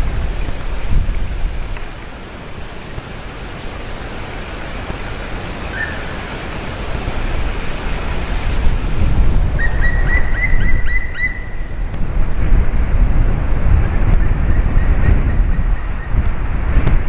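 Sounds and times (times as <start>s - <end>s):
steady rushing noise: 0.0s - 17.0s
wind rumble on microphone: 0.0s - 17.0s
woodpecker calling: 2.8s - 6.9s, 9.5s - 11.8s.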